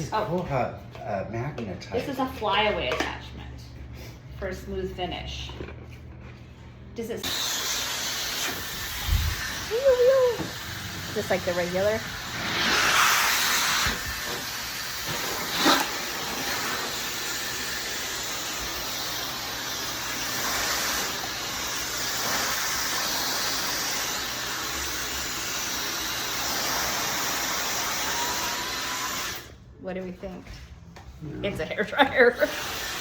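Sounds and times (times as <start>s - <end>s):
hair dryer running: 7.2s - 29.6s, 31.6s - 33.0s.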